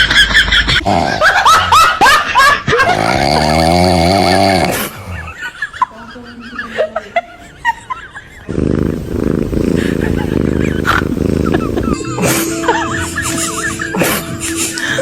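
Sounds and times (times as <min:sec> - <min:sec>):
puppy growling: 0:02.8 - 0:05.5, 0:08.4 - 0:14.4.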